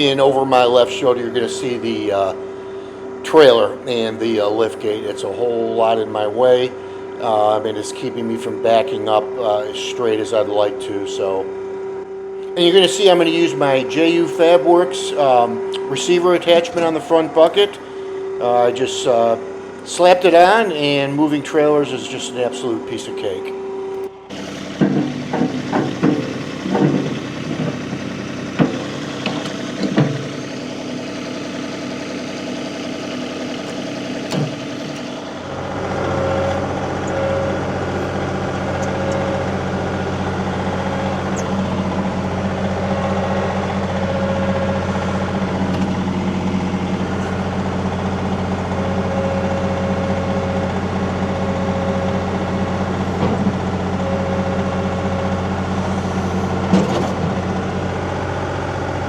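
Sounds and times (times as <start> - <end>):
tractor engine running: 0.0 - 59.0
sharp knocks: 24.7 - 27.9, 28.6 - 30.4.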